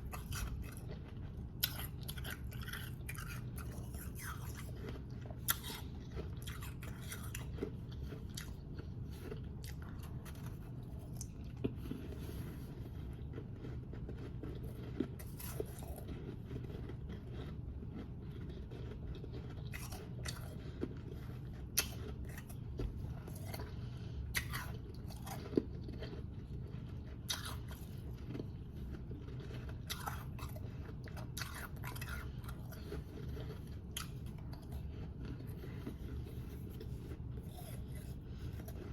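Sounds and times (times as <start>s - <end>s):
person chewing ice crunches: 0.0s - 38.9s
steady low hum: 0.0s - 38.9s.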